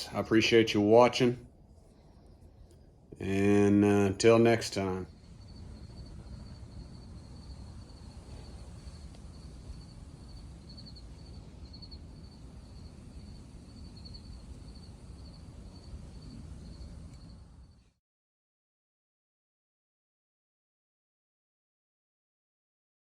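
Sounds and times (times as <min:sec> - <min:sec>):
low rumble: 0:01.3 - 0:17.8
insect chirping: 0:01.6 - 0:03.3, 0:04.2 - 0:18.0.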